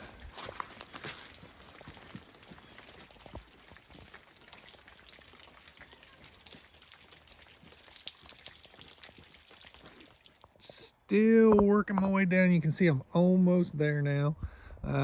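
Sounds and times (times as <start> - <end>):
footsteps on woodland trail: 0.0 - 10.8.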